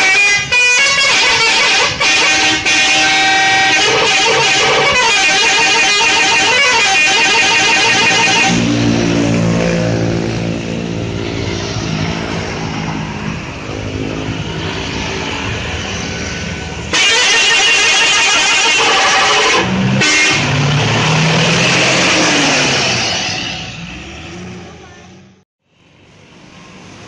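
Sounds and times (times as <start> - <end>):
bus multi-tone horn tune: 0.0 - 9.6, 16.8 - 23.6
engine noise: 0.0 - 27.0
street noise: 0.0 - 27.0.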